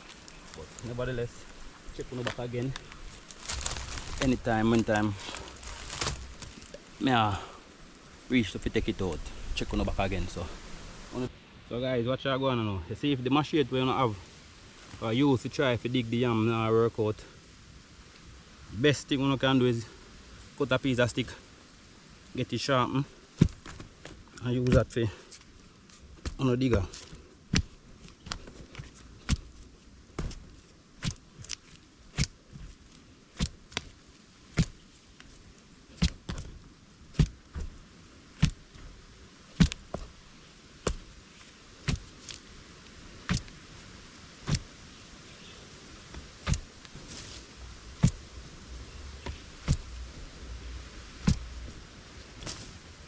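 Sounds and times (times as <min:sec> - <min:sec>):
wooden stick striking ground: 0:02.1 - 0:06.8, 0:23.4 - 0:37.8, 0:38.4 - 0:40.2, 0:40.8 - 0:41.2, 0:41.8 - 0:42.5, 0:43.2 - 0:43.6, 0:44.4 - 0:44.7, 0:46.1 - 0:48.3, 0:49.2 - 0:50.2, 0:51.2 - 0:52.8.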